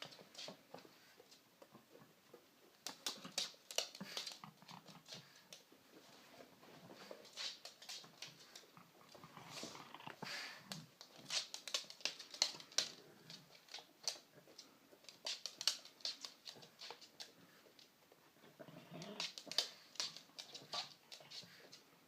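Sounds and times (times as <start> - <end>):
dog making rapid clicks: 2.8 - 5.6, 7.4 - 17.9, 19.0 - 21.8.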